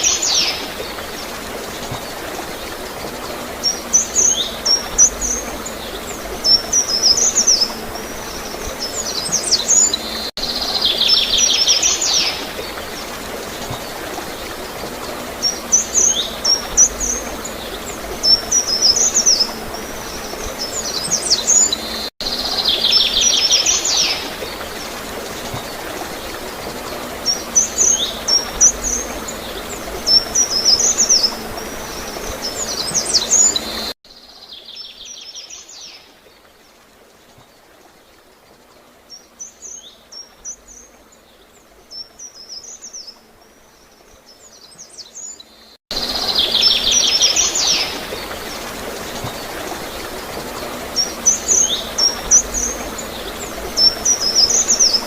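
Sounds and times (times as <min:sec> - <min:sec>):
gurgling running water: 0:00.0 - 0:34.0, 0:45.9 - 0:55.0
small birds chirping and trilling: 0:00.0 - 0:36.6, 0:39.1 - 0:55.0.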